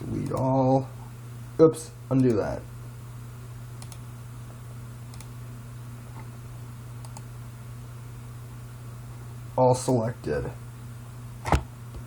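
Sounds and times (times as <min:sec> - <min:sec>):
steady low hum: 0:00.0 - 0:12.0
computer mouse or keyboard clicks: 0:03.8 - 0:04.0, 0:05.1 - 0:05.3, 0:07.0 - 0:07.3.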